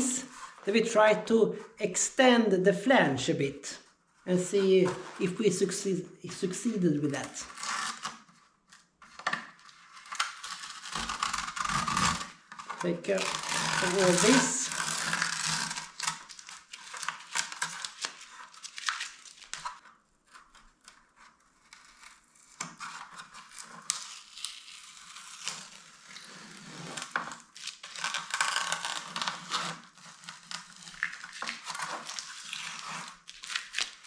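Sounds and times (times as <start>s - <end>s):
tape tearing and crinkling: 7.0s - 34.0s.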